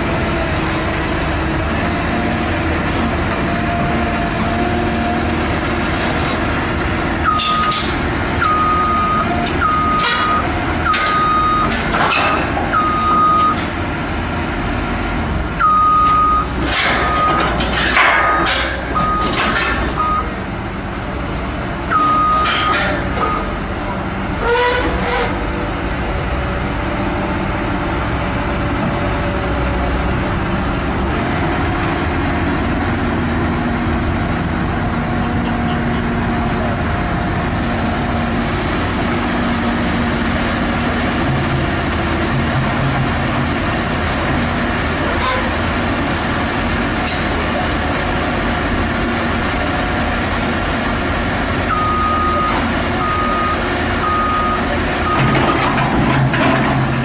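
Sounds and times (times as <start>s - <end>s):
heavy vehicle engine running: 0.0s - 57.0s
reversing alarm beeping: 7.2s - 11.9s, 12.7s - 13.7s, 15.6s - 17.6s, 19.0s - 20.4s, 21.9s - 23.6s, 51.7s - 55.7s.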